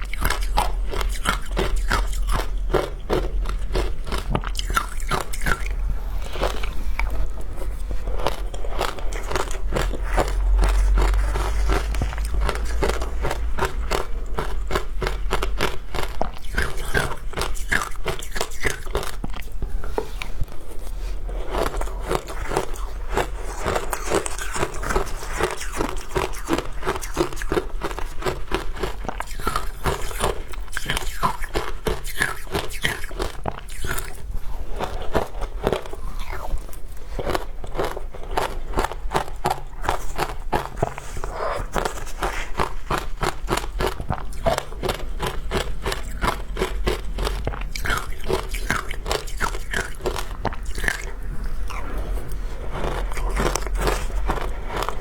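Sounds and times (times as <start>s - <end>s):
biting and crunching ice: 0.0s - 19.5s, 21.5s - 55.0s
chewing: 0.0s - 55.0s.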